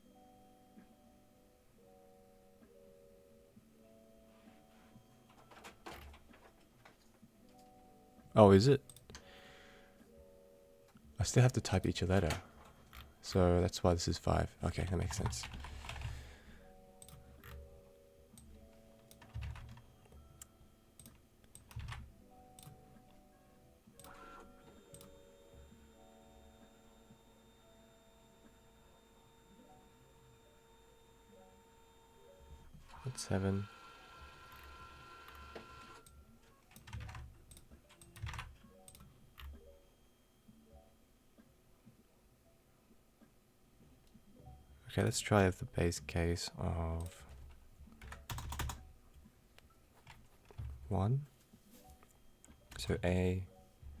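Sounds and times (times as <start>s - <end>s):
faint sustained musical tones: 0.0s - 49.9s
faint keyboard typing: 4.8s - 9.3s, 14.6s - 23.3s, 23.9s - 39.9s, 46.6s - 51.1s.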